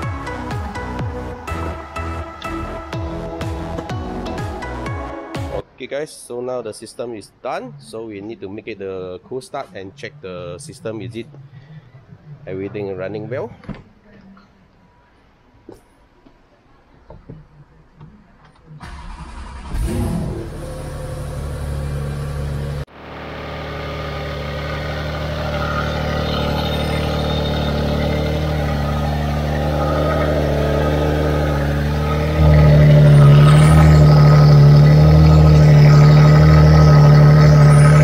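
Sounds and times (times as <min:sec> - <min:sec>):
car engine cold start flare: 0:18.8 - 0:38.0
car engine idling: 0:18.8 - 0:38.0.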